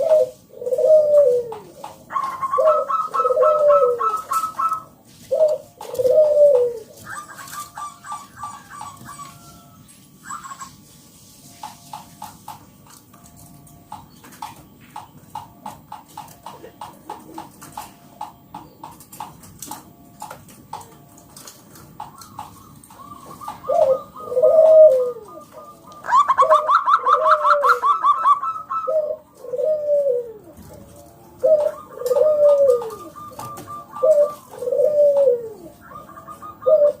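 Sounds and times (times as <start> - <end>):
dove rolling coos with trill: 0.0 - 10.8, 21.7 - 37.0.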